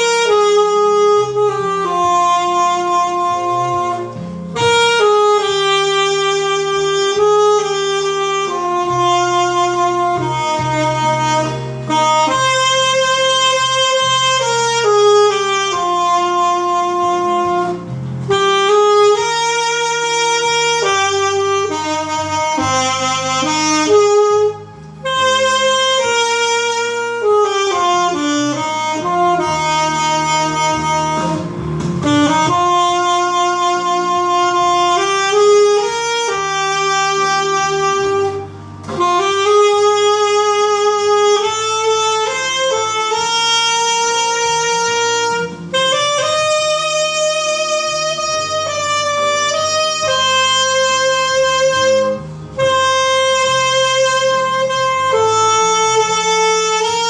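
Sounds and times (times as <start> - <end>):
saxophone melody: 0.0 - 57.0.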